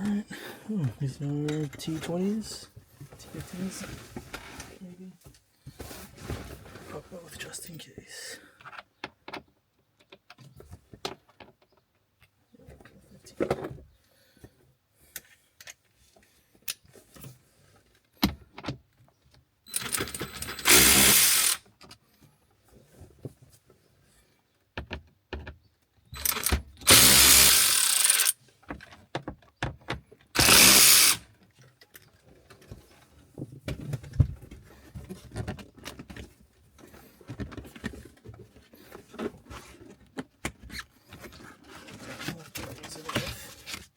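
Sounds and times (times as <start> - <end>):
power drill spinning out screws: 19.7 - 21.7, 26.1 - 28.4, 30.4 - 31.2.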